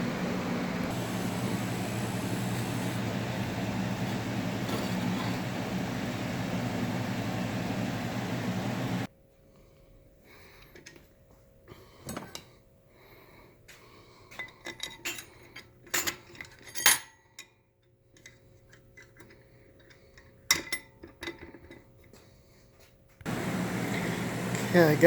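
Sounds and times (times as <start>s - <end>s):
metal bolts clinking and knocking: 14.4s - 17.5s, 18.2s - 22.1s.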